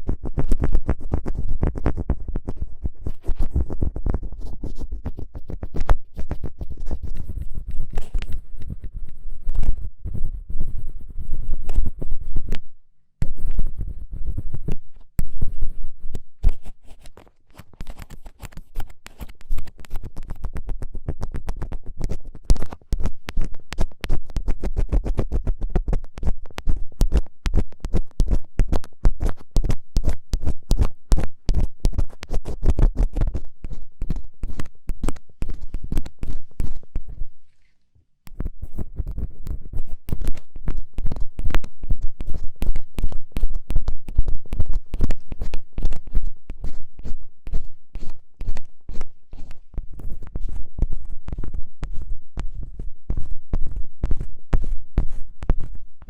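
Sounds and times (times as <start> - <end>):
ear pick scraping: 32.1 - 55.8.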